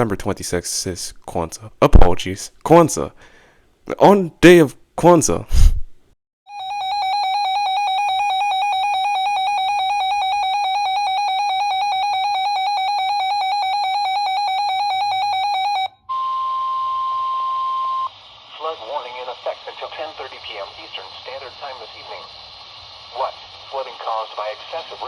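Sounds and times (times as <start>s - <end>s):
steady warning alarm tone: 6.5s - 18.2s
receiver hiss: 16.9s - 25.0s.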